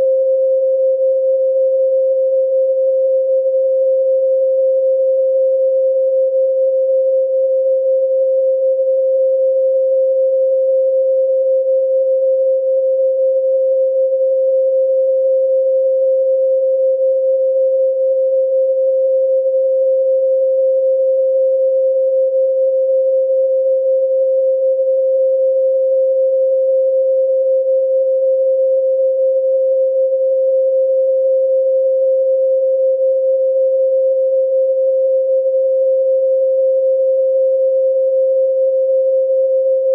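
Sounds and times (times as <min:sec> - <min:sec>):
pure sine tone: 0:00.0 - 0:39.9.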